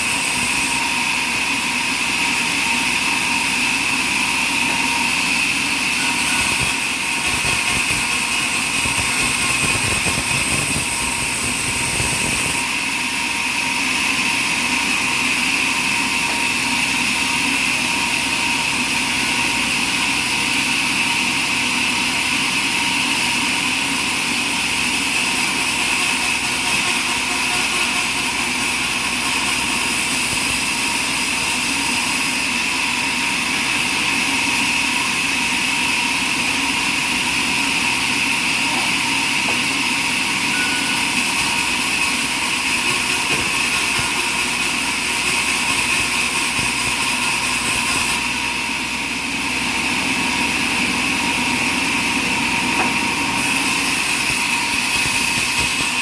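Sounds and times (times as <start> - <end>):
sawmill machinery drone: 0.0 - 56.0
high mechanical whine: 4.2 - 13.8, 38.6 - 50.8.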